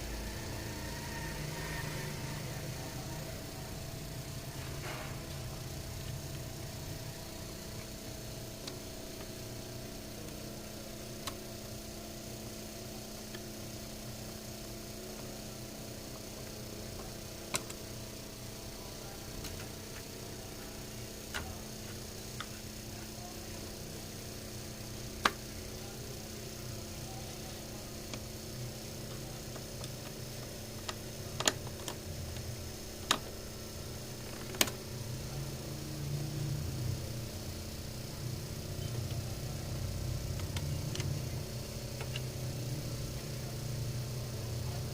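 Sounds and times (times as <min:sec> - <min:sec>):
electrical hum: 0:00.0 - 0:44.9.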